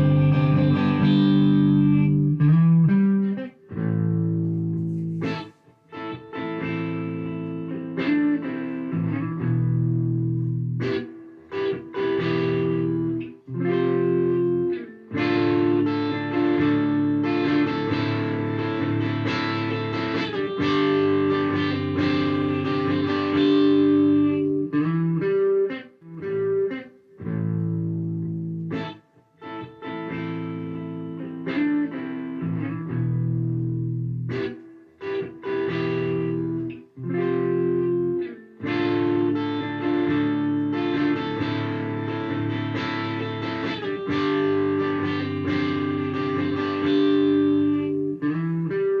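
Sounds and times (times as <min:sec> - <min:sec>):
overdriven electric guitar chords: 0:00.0 - 0:49.0.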